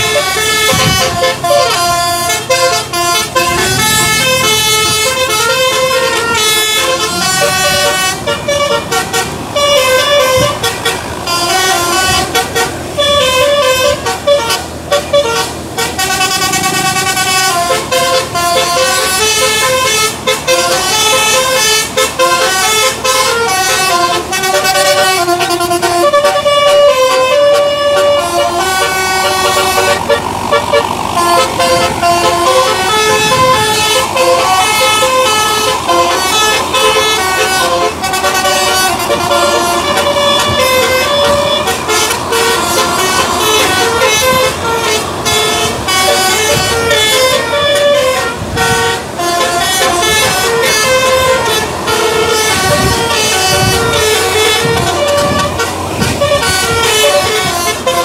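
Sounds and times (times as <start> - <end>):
musical air horn playing a tune: 0.0 - 58.0.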